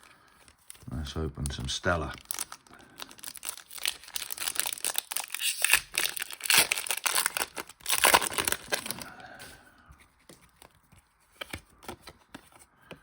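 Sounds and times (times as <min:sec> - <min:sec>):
foil wrapper tearing and crinkling: 0:01.0 - 0:09.1.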